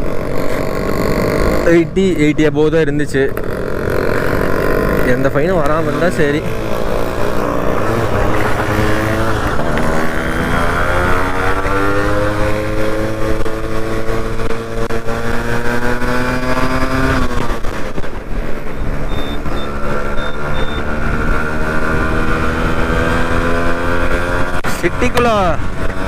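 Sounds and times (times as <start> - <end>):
motorcycle engine accelerating: 0.0 - 26.0.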